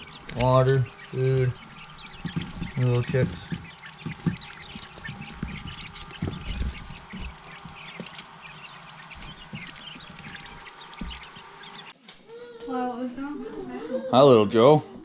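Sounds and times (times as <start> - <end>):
dull knocks: 0.0 - 11.9
quail chicks peeping: 0.0 - 14.0.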